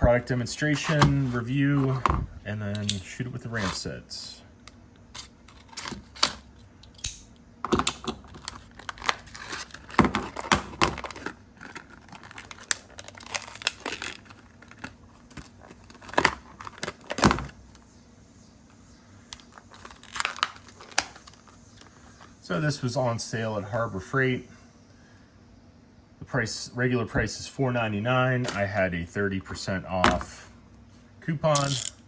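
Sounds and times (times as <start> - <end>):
package crinkling and tearing: 8.3 - 17.2, 19.5 - 21.5.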